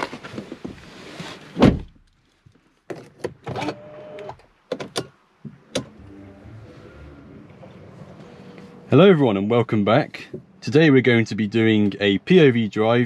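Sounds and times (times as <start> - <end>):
car door shutting: 3.4 - 8.6.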